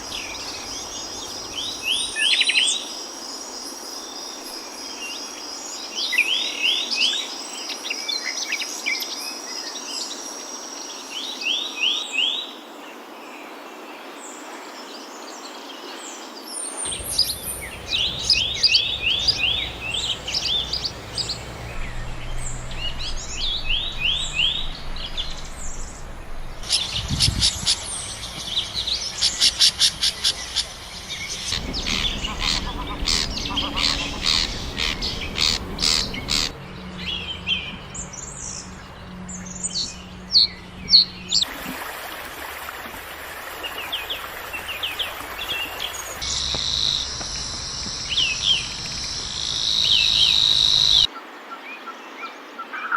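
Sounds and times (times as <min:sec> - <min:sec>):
songbirds singing: 0:00.0 - 0:41.5, 0:43.3 - 0:52.9
insect buzz: 0:16.8 - 0:40.5, 0:41.7 - 0:51.1.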